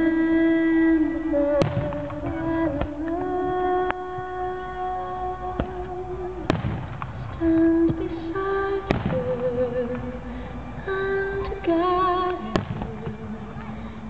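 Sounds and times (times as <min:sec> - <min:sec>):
slow music with held notes: 0:00.0 - 0:14.0
fireworks bangs: 0:01.4 - 0:03.4, 0:05.6 - 0:08.2, 0:08.8 - 0:09.9, 0:12.5 - 0:13.3.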